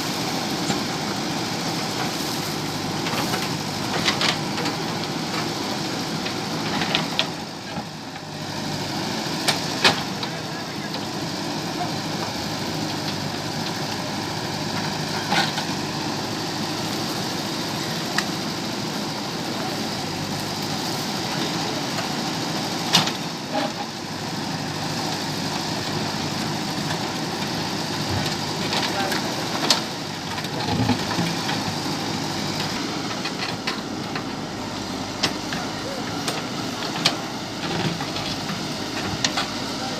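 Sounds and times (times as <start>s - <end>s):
backhoe diesel engine running: 0.0s - 39.9s.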